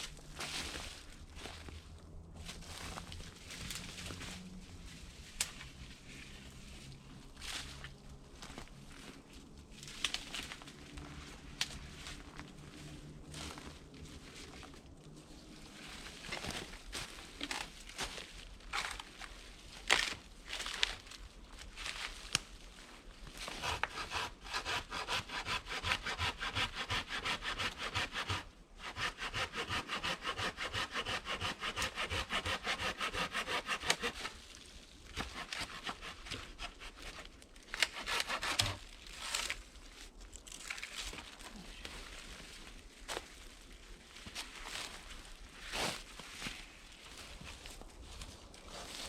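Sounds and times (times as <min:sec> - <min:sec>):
hand saw cutting wood: 0:23.4 - 0:34.4, 0:35.1 - 0:39.6.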